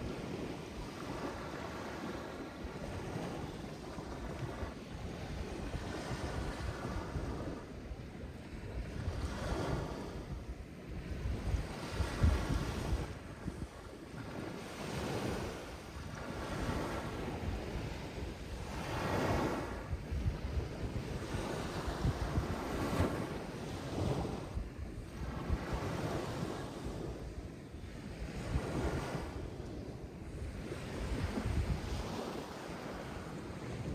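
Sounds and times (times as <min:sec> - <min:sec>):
wind buffeting microphone: 0:08.6 - 0:33.9
sea waves washing in: 0:11.6 - 0:27.8.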